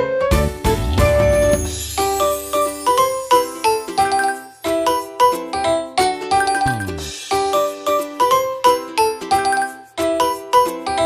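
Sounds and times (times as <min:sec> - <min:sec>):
bell-like chime melody: 0:01.6 - 0:05.4, 0:06.4 - 0:07.1.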